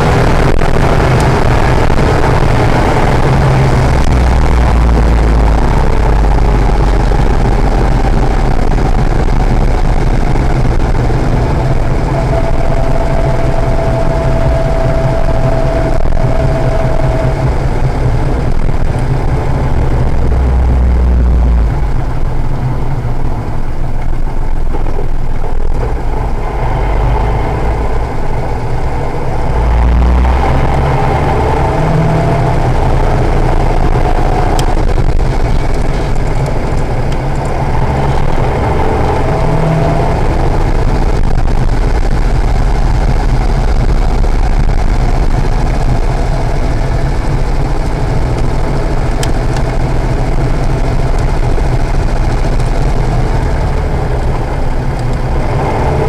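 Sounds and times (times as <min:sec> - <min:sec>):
car engine running: 0:00.0 - 0:56.0.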